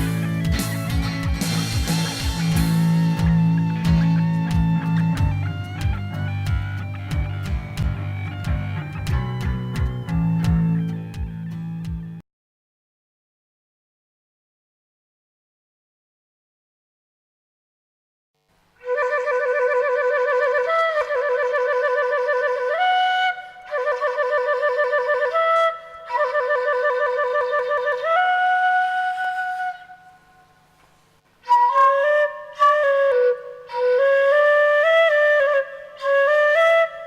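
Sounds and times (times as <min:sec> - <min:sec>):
solo wind instrument melody: 0:18.8 - 0:30.6, 0:31.4 - 0:37.0.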